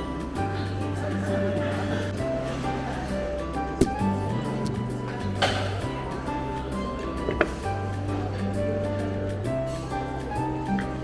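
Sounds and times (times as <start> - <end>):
background music with held notes: 0.0 - 11.0.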